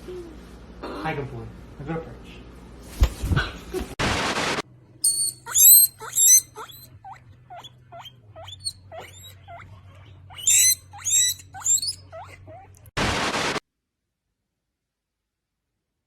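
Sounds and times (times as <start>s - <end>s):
small animal squeaking: 5.0s - 12.9s.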